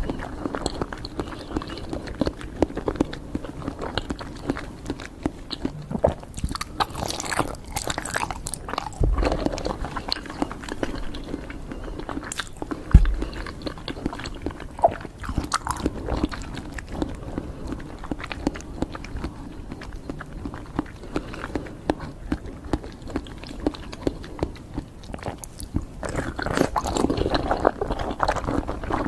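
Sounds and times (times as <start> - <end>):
chewing sweets with sharp clicks: 0.0 - 29.0
low thump: 12.9 - 13.2.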